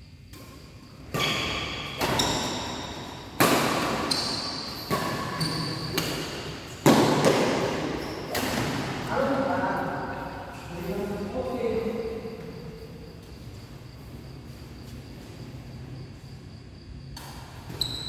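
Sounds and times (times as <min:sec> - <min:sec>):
racket hitting shuttlecock: 0:01.1 - 0:09.1
short high squeaks: 0:04.0 - 0:06.0, 0:17.7 - 0:18.0.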